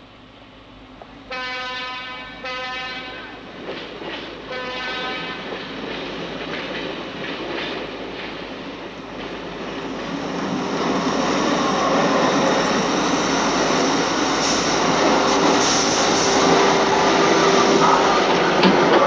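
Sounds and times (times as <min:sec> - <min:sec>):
railway cars rumbling and clattering: 0:00.1 - 0:19.0
train horn blasts: 0:01.3 - 0:03.4, 0:04.5 - 0:05.5, 0:15.3 - 0:19.0.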